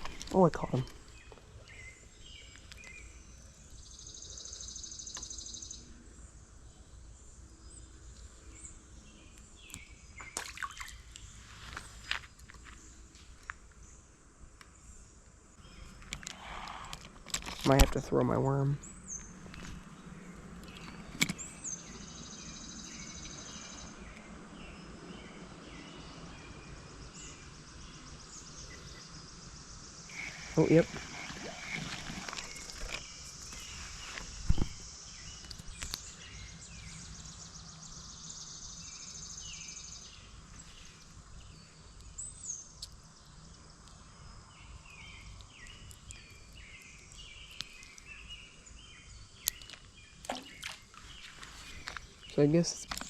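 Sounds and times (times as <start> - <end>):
birds chirping: 0.0 - 53.0
steady background hiss: 11.0 - 53.0
sharp clicks and rustles: 16.0 - 18.3, 30.1 - 36.1
rapid high bird trill: 29.8 - 34.1.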